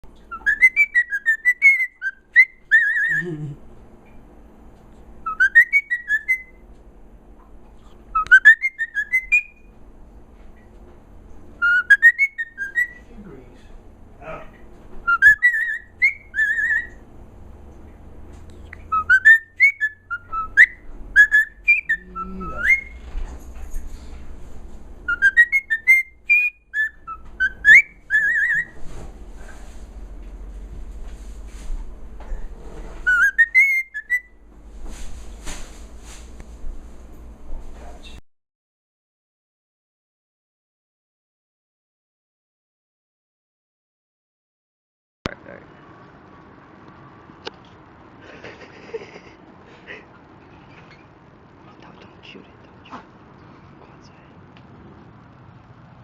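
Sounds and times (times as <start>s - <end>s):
warbling whistled phrases: 0.2s - 3.4s, 5.3s - 6.6s, 7.9s - 9.7s, 11.6s - 13.1s, 15.1s - 17.0s, 18.6s - 23.0s, 25.1s - 28.8s, 33.0s - 34.4s.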